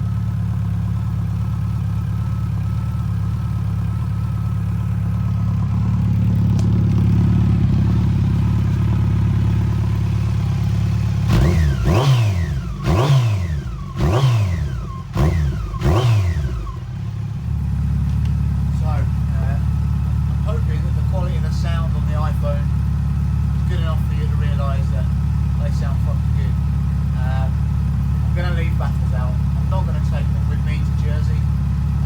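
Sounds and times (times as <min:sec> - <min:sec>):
motorcycle engine idling: 0:00.0 - 0:32.0
motorcycle throttle blips: 0:00.0 - 0:32.0.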